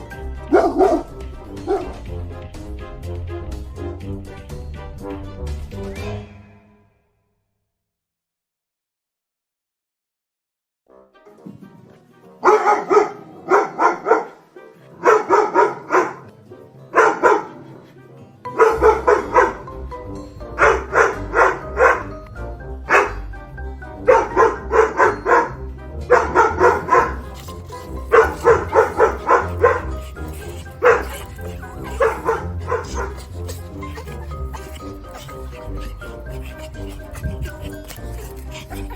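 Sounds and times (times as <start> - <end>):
dog barking: 0.5 - 2.0, 12.4 - 16.3, 16.9 - 17.9, 18.5 - 19.7, 20.5 - 22.2, 22.9 - 23.3, 24.0 - 38.9.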